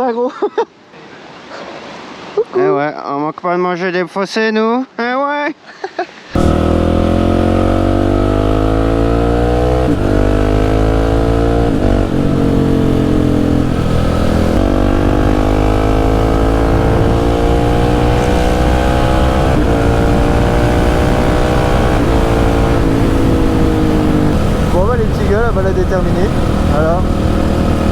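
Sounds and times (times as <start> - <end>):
motorcycle engine accelerating: 6.4 - 27.9.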